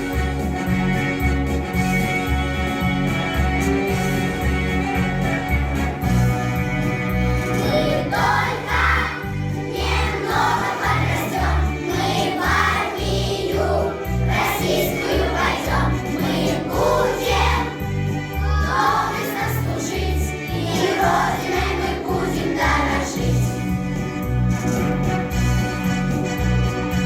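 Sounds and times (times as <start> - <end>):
group singing over a steady beat: 7.6 - 23.7.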